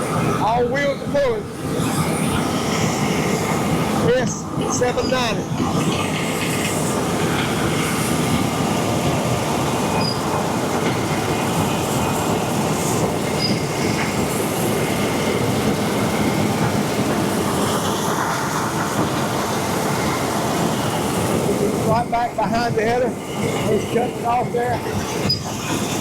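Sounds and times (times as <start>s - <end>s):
combine harvester running: 0.0s - 26.0s.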